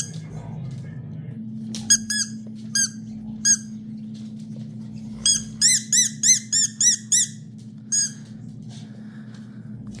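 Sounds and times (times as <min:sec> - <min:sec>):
squeaky toy squeaks: 0:01.9 - 0:03.7, 0:05.2 - 0:08.2.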